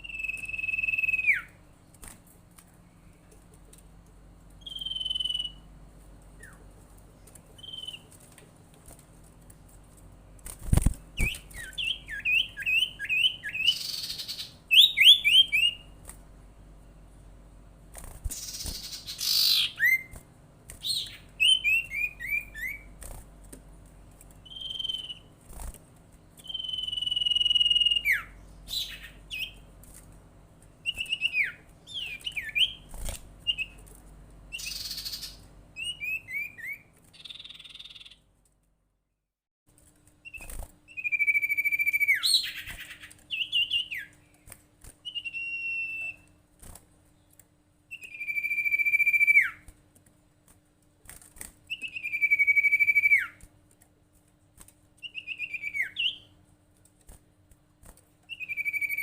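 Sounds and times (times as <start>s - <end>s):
songbird singing whistles: 0.0s - 1.6s, 4.6s - 5.7s, 6.4s - 6.6s, 7.6s - 8.2s, 11.2s - 16.0s, 18.3s - 20.2s, 20.8s - 22.9s, 24.4s - 25.4s, 26.4s - 29.6s, 30.8s - 33.8s, 34.5s - 38.2s, 40.2s - 44.2s, 45.0s - 46.4s, 47.9s - 49.7s, 51.7s - 53.4s, 55.0s - 56.3s, 58.3s - 59.0s.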